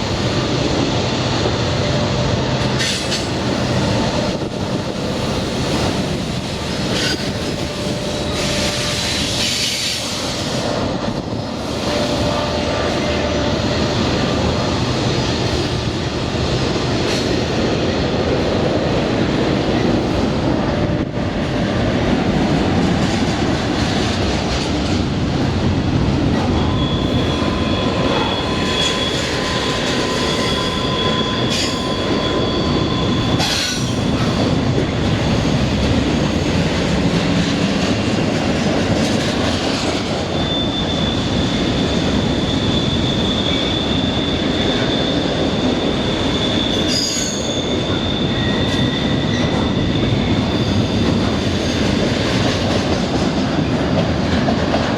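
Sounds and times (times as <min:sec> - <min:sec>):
train wheels rumbling on rails: 0:00.0 - 0:54.9
high wheel squeal: 0:26.5 - 0:34.6, 0:40.2 - 0:51.0.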